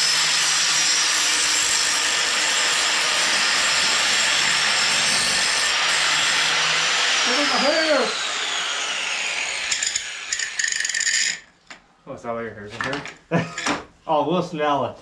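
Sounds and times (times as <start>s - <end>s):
power tool grinding metal: 0.0s - 11.4s.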